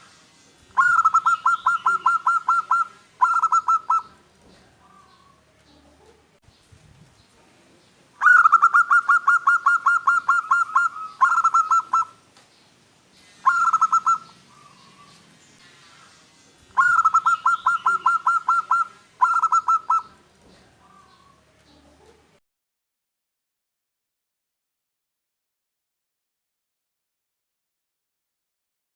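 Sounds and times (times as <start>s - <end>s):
dove cooing rapidly: 0.8s - 5.4s, 8.2s - 12.2s, 13.4s - 15.2s, 16.8s - 20.2s.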